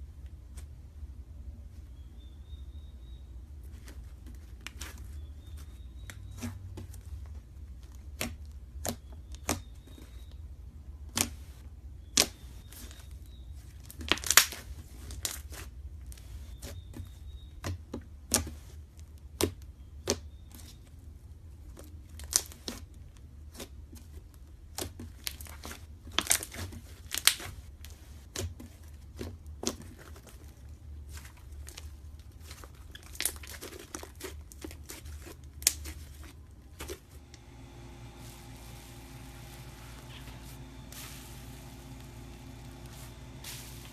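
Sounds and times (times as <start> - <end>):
low hum: 37.0 - 43.9.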